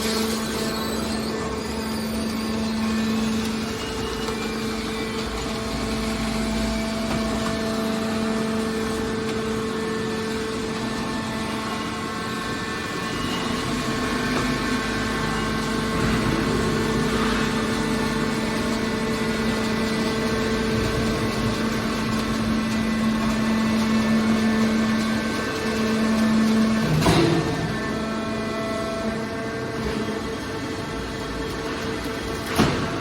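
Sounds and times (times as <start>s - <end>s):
industrial machinery humming: 0.0s - 33.0s.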